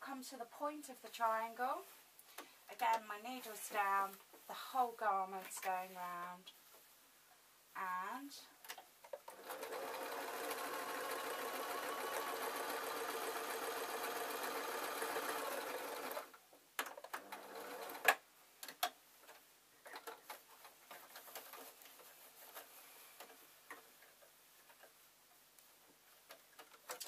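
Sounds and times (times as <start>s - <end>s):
sewing machine stitching: 9.2s - 18.2s.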